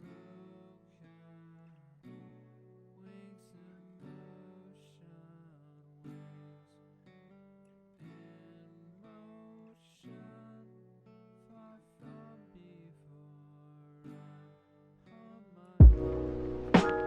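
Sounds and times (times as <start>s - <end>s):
acoustic guitar chords ringing: 13.6s - 17.0s.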